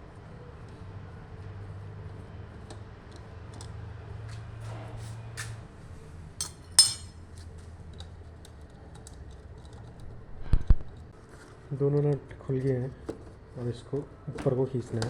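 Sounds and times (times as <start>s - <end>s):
metal spanner clicking and clinking: 6.4s - 7.1s
sharp ringing clink: 6.4s - 7.1s.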